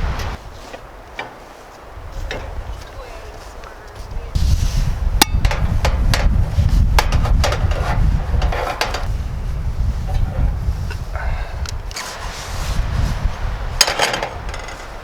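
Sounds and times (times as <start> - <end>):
steady low rumble: 0.0 - 0.6, 3.5 - 15.0
sharp knocks and clatter: 5.2 - 9.1.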